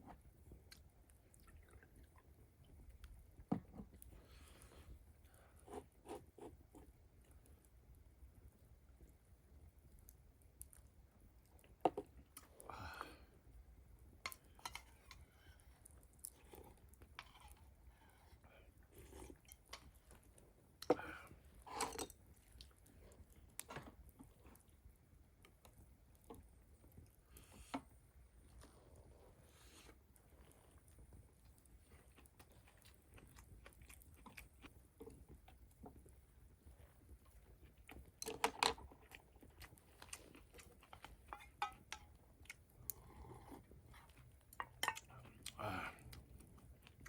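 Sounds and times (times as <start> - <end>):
person chewing food: 0.1 - 3.1, 14.2 - 47.0.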